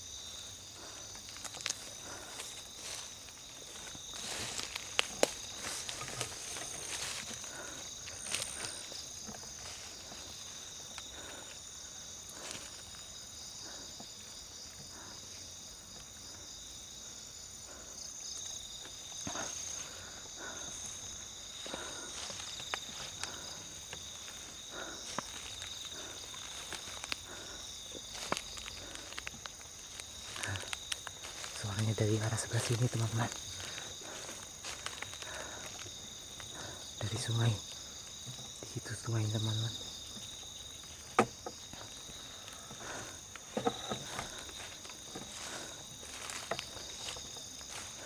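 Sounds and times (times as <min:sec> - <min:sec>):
crickets trilling: 0:00.0 - 0:48.0
faint rustles and clicks: 0:01.2 - 0:11.0.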